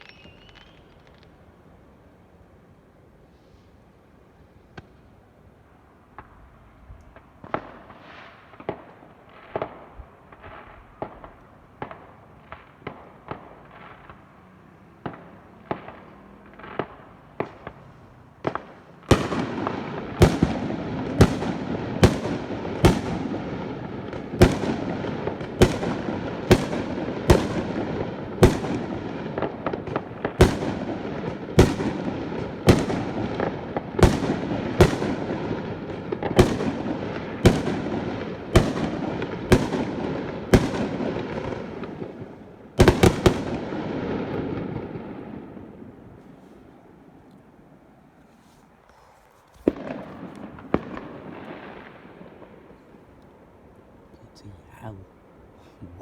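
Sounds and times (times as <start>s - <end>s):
fireworks crackling: 0.0s - 1.6s, 6.1s - 56.0s
fireworks banging: 15.0s - 46.7s, 49.5s - 52.9s.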